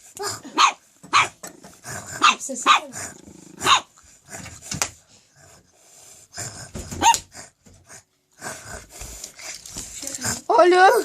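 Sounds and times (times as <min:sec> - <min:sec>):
dog barking: 0:00.6 - 0:01.4, 0:02.2 - 0:02.9, 0:03.6 - 0:03.9
breathy noises: 0:01.6 - 0:11.0.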